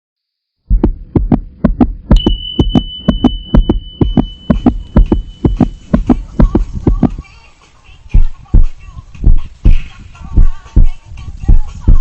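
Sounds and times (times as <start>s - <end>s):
heartbeat-like throbbing pulse: 0.7s - 7.2s, 8.2s - 12.0s
steady high tone: 1.8s - 7.2s.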